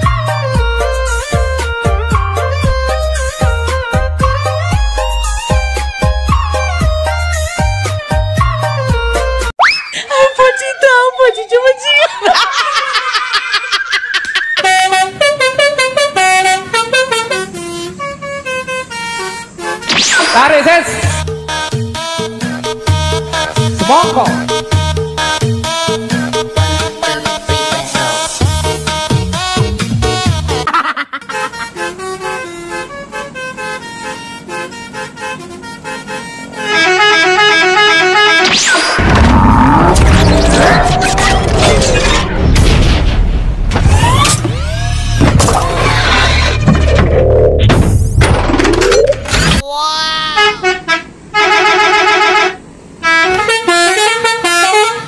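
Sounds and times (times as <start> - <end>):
musical vehicle horn tune: 0.0 - 9.5, 14.5 - 40.7, 50.2 - 55.0.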